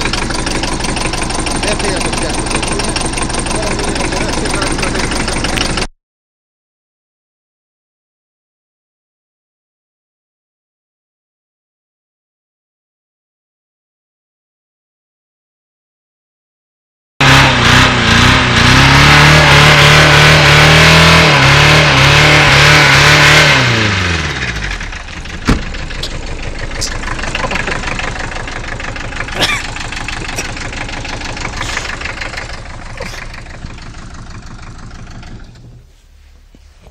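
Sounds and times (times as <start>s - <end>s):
diesel engine revving and idling: 0.0s - 5.9s, 17.2s - 36.9s.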